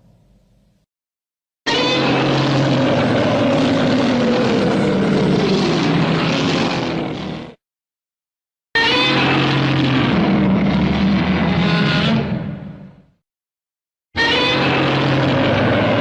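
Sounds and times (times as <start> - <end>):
monster roar: 1.7 - 7.6, 8.8 - 12.9, 14.2 - 16.0.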